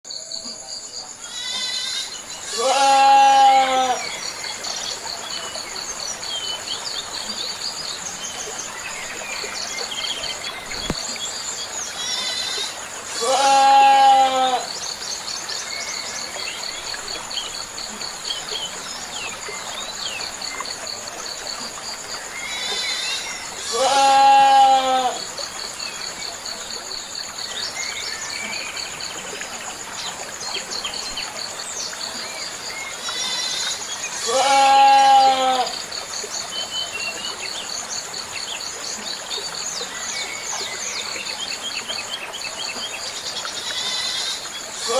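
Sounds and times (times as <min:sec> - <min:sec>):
crickets trilling: 0:00.1 - 0:44.9
goat bleating: 0:01.3 - 0:04.0, 0:13.2 - 0:14.6, 0:23.6 - 0:25.2, 0:34.2 - 0:35.7.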